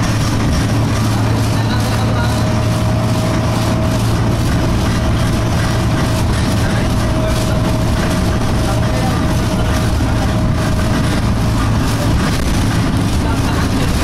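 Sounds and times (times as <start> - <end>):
bus engine and road drone: 0.0 - 14.0.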